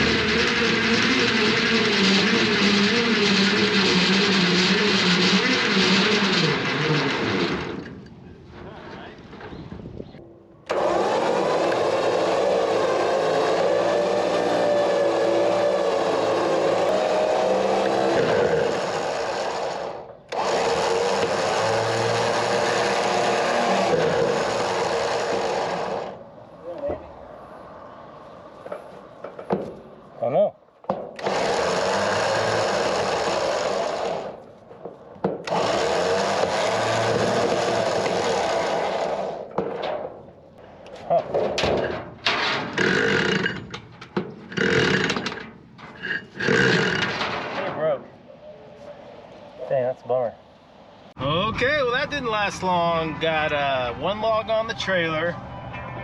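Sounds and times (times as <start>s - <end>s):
electric winch motor whining: 0.0s - 7.9s, 10.7s - 26.2s, 31.2s - 34.4s, 35.4s - 39.4s.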